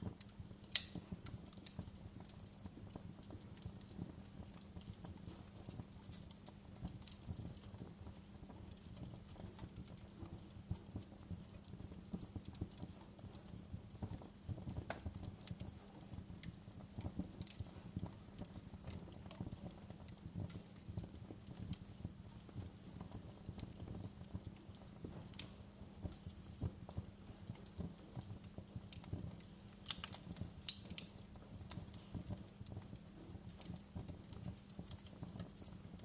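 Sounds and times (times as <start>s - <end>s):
wood fire crackling: 0.0s - 36.0s.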